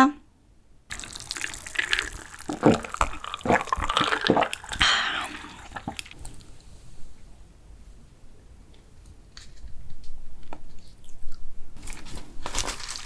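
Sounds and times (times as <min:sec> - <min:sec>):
spoon squelching through saucy food: 0:00.9 - 0:06.6.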